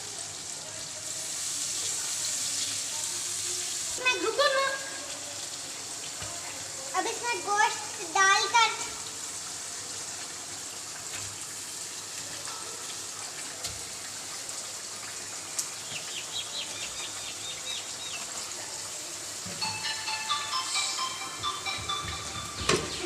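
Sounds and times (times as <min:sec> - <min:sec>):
chicken sizzling in hot oil: 0:00.0 - 0:20.6
high chirps: 0:19.6 - 0:23.0.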